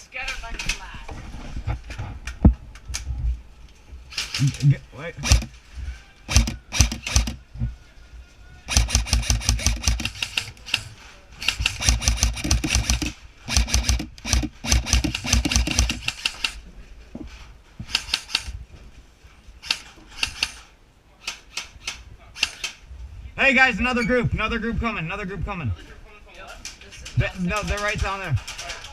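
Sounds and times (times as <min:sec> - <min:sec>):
airsoft rifles firing bursts: 0:05.2 - 0:05.5, 0:06.3 - 0:07.4, 0:08.7 - 0:16.6.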